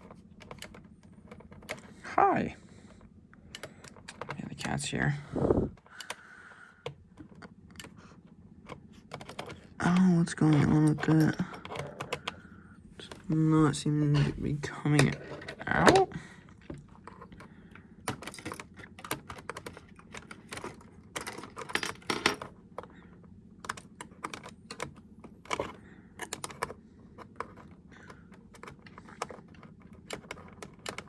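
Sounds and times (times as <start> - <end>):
screwdriver clicking on plastic: 0.0 - 2.0, 3.5 - 5.0, 5.8 - 8.1, 23.6 - 31.0
faint steady hum: 0.0 - 31.0.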